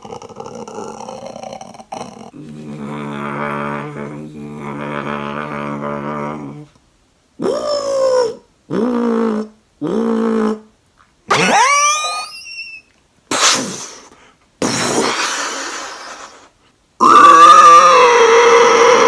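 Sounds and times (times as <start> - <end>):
man growling creature impression: 0.0 - 6.8, 7.4 - 10.7, 11.3 - 12.3, 17.0 - 19.0
breathy hisses: 2.2 - 6.8, 13.3 - 16.7
man shrieking: 17.0 - 19.0.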